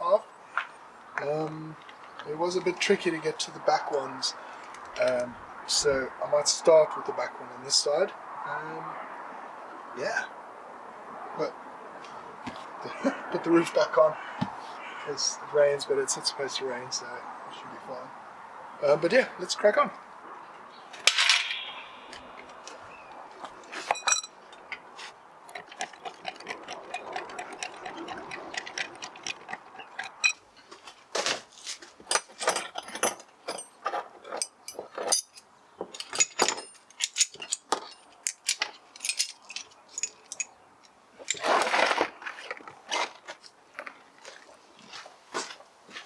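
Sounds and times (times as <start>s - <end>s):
metal tools clicking and clinking: 21.0s - 22.6s, 23.9s - 24.8s, 25.5s - 30.4s, 32.1s - 41.5s.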